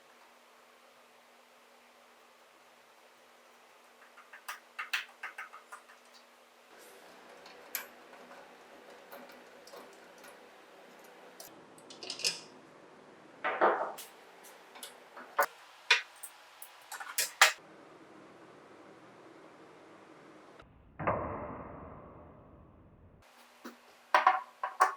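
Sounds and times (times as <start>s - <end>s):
small hard parts clicking: 3.9s - 12.5s.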